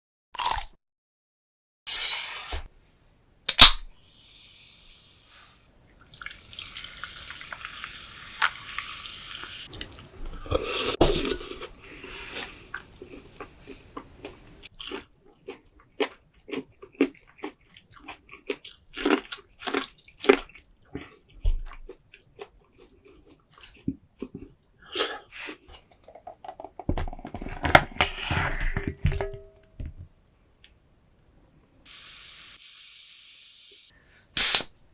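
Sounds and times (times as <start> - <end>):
wet chewing and smacking: 9.7 - 24.6.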